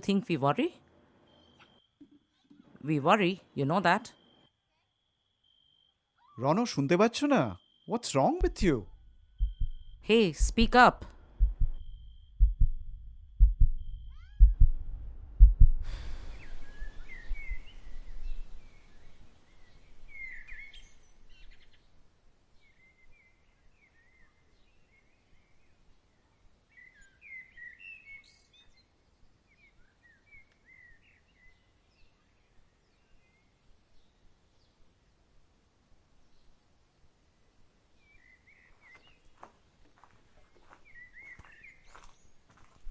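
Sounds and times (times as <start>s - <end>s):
deep heartbeat-like thumps: 8.4s - 16.3s
small birds chirping: 38.0s - 42.9s.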